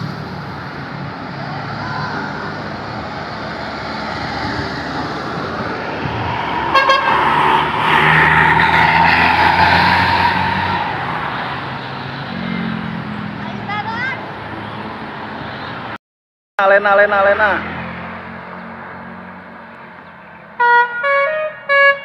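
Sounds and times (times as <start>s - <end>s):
traffic noise: 0.0s - 16.0s, 16.6s - 22.0s
bus horn toot: 6.7s - 7.3s, 20.6s - 22.0s.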